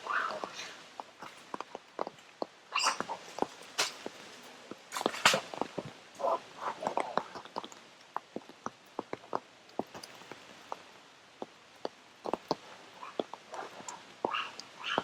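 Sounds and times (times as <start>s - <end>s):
faint hiss of light rain: 0.0s - 15.0s.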